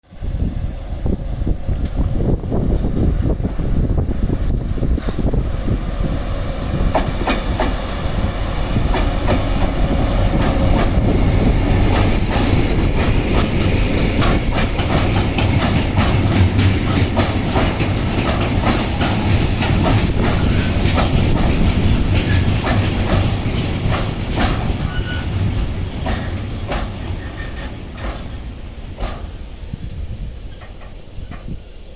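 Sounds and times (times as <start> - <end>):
train rumbling past: 0.0 - 31.9
high wheel squeal: 18.5 - 21.4, 24.2 - 31.9.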